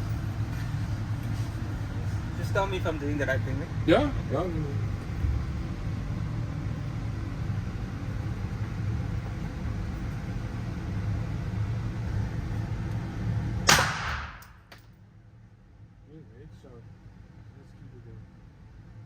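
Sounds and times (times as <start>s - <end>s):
steady low rumble: 0.0s - 19.0s
pistol shot: 13.6s - 14.6s.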